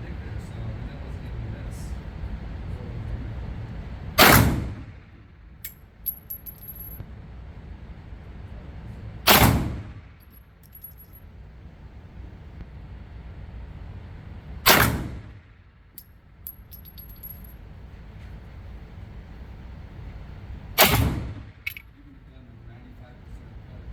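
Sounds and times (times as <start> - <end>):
brass casings clinking: 5.6 - 7.0, 10.2 - 11.2, 16.5 - 17.6, 21.7 - 22.0.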